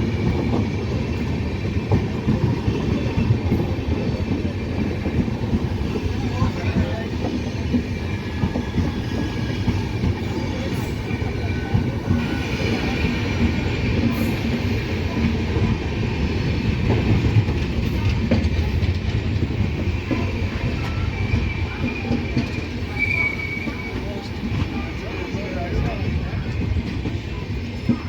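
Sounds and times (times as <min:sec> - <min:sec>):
train wheels rumbling on track: 0:00.0 - 0:28.0
rail-joint clatter: 0:00.1 - 0:28.0
high brake squeal: 0:08.2 - 0:13.4, 0:20.7 - 0:24.9.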